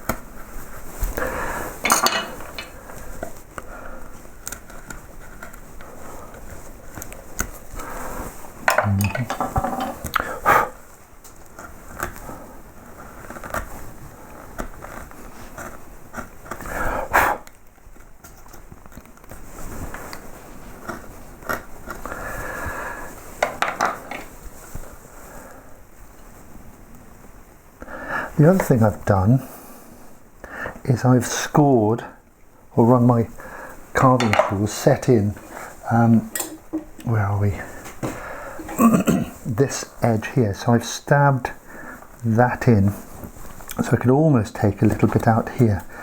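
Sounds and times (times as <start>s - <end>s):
carving gouges scraping wood: 13.2s - 13.7s.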